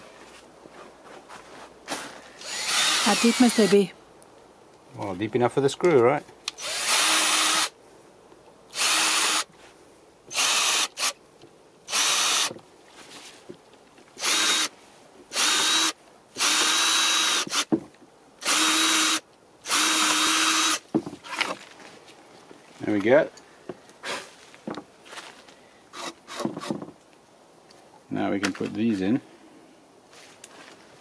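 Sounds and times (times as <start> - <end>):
power drill drilling wood: 2.4 - 3.9, 6.6 - 7.7, 8.7 - 9.5, 10.3 - 11.2, 11.9 - 12.5, 14.2 - 14.7, 15.3 - 17.7, 18.4 - 21.4.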